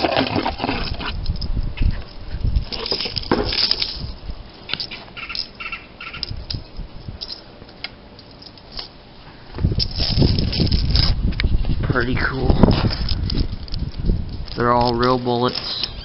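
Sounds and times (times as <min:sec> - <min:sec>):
cartridges clicking and rattling: 0:04.7 - 0:08.9
short squeaks: 0:15.6 - 0:16.0.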